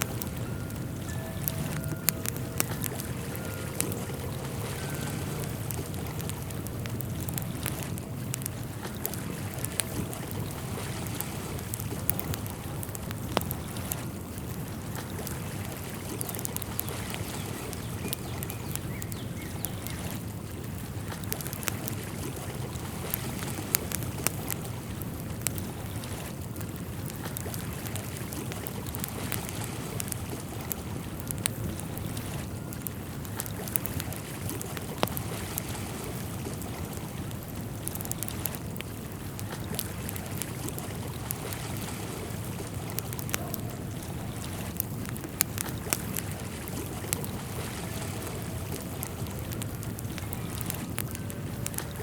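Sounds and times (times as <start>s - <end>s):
small sharp ticks: 0.0s - 52.0s.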